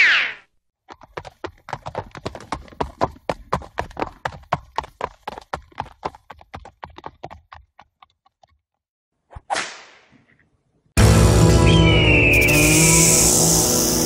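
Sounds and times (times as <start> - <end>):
horse hoofbeats: 0.8 - 8.8
whip crack: 9.4 - 10.1.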